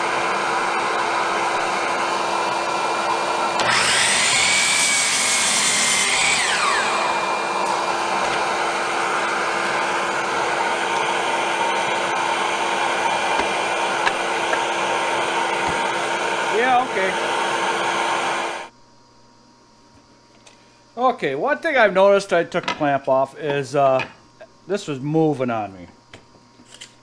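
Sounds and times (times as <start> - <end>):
miter saw motor whine: 0.0 - 18.7
blower-like hiss: 3.6 - 18.7.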